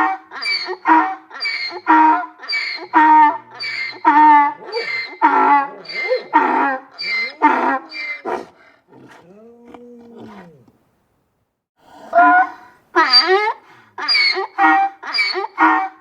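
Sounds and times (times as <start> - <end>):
donkey braying: 0.0 - 8.5, 12.0 - 16.0.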